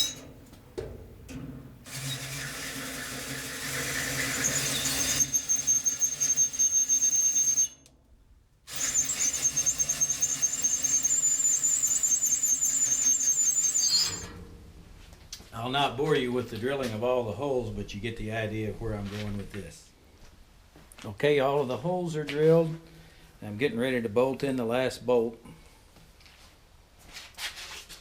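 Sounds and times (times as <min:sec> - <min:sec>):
electric drill boring through metal: 0:01.9 - 0:07.8, 0:08.7 - 0:14.3.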